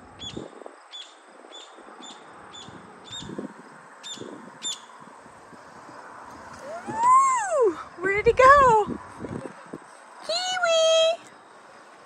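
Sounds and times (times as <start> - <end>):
bird chirping: 0.2 - 3.4, 4.0 - 5.0.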